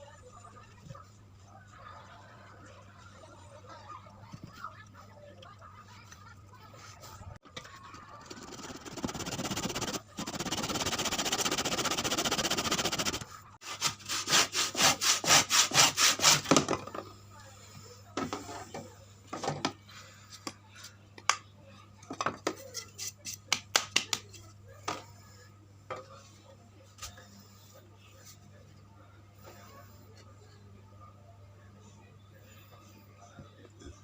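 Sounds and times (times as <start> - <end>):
hand saw cutting wood: 8.7 - 16.5.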